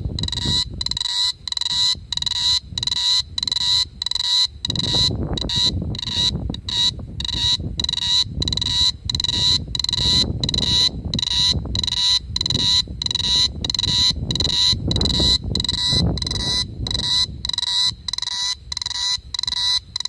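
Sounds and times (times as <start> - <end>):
cicada buzzing pulses: 0.0 - 20.0.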